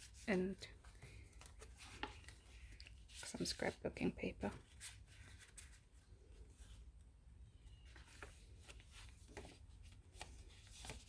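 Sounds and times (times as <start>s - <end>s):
paper rustling and tapping: 0.8s - 3.7s, 7.9s - 11.0s.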